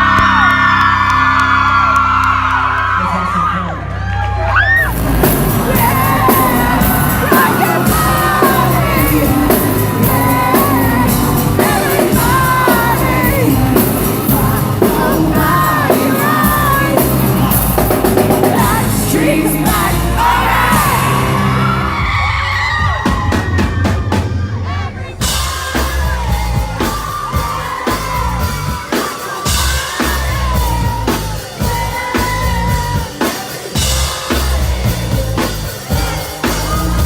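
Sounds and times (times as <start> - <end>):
loud rock music with singing: 0.0 - 2.6, 4.5 - 37.0
people yelling and whooping: 0.0 - 37.0.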